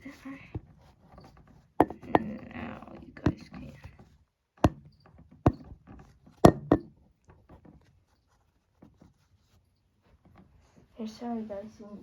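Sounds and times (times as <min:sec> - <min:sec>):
hard objects knocking and clicking: 0:00.6 - 0:04.0, 0:04.6 - 0:07.8.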